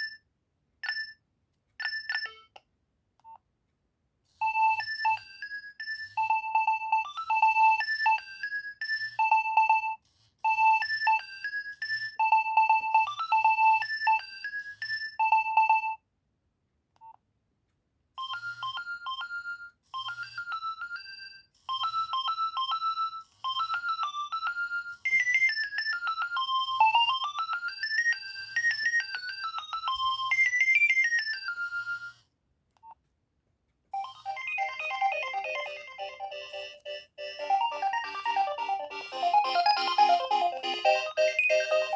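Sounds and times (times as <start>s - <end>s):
mobile phone ringtones: 4.4s - 16.0s, 18.2s - 32.1s, 34.0s - 41.9s.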